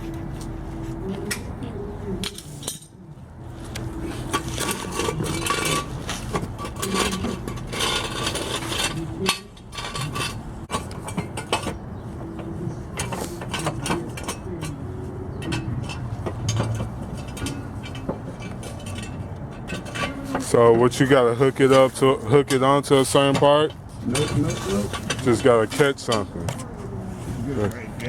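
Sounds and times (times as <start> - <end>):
car jack metal clicks and clinks: 3.7 - 20.6.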